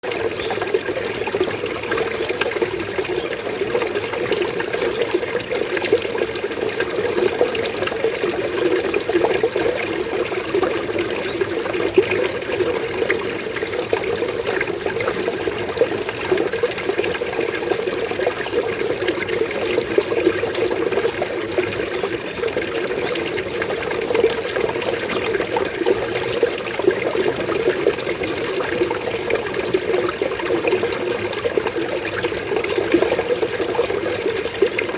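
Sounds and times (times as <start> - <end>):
running water gurgling: 0.0 - 34.9.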